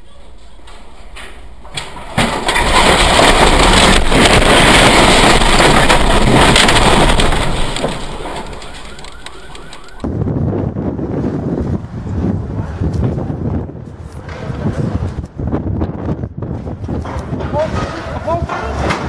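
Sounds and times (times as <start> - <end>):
strong wind gusting: 10.0 - 19.0.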